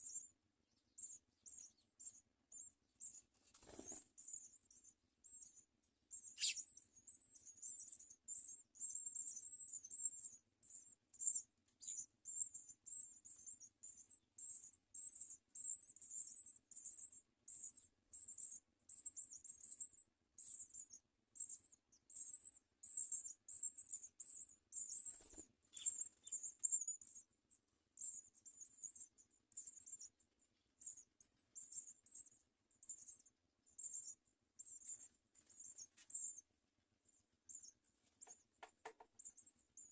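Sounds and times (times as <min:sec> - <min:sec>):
nestlings chirping: 0:06.3 - 0:06.9, 0:24.0 - 0:27.2.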